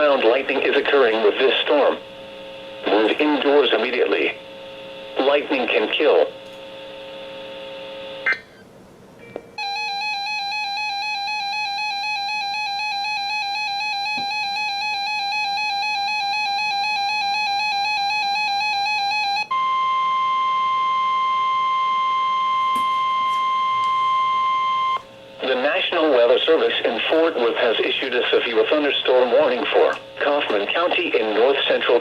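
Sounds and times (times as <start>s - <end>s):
steady warning alarm tone: 9.6s - 32.0s.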